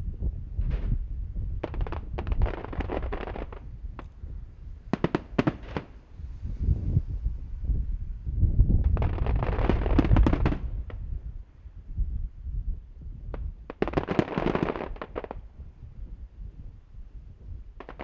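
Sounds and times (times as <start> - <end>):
fireworks crackling: 1.6 - 4.2, 4.8 - 6.2, 8.8 - 11.1, 13.4 - 15.5, 17.8 - 18.0
fireworks booming: 4.8 - 6.1, 8.8 - 11.0.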